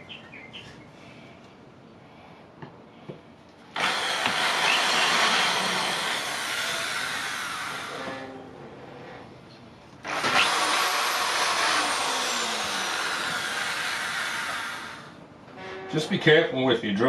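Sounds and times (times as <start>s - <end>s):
power drill boring into board: 3.8s - 8.2s, 10.0s - 15.1s.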